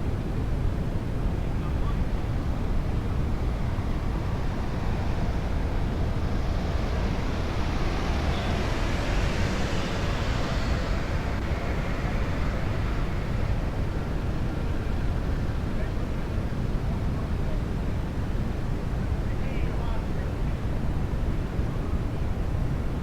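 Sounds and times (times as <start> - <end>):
wind buffeting microphone: 0.0 - 23.0.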